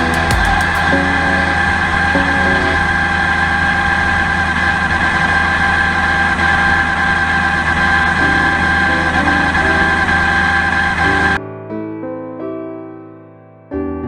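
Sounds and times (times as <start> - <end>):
background music: 0.0 - 4.0.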